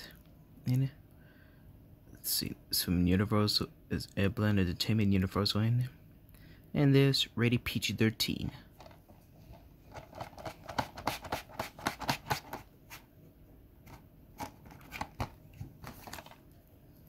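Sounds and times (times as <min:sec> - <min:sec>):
plastic case clicking and crinkling: 0:08.8 - 0:12.7, 0:13.9 - 0:16.5.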